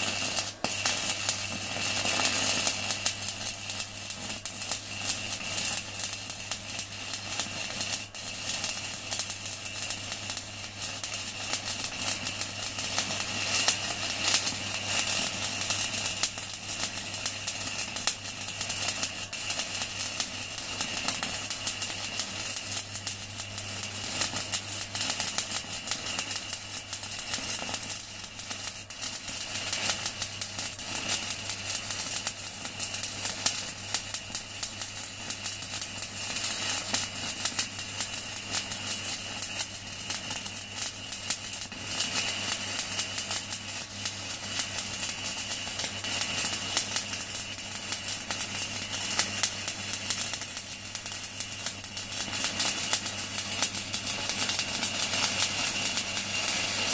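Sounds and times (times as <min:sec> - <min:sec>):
welding arc crackling and hissing: 0:00.0 - 0:56.9
welder low hum: 0:51.6 - 0:56.9.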